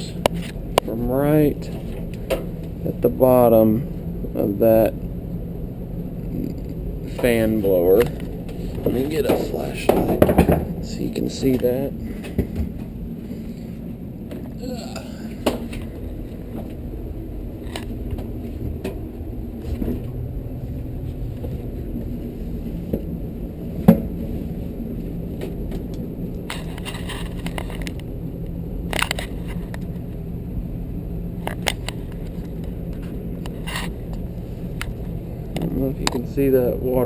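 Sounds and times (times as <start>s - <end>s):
steady low hum: 0.0s - 37.0s
rustling scrape: 26.5s - 28.0s.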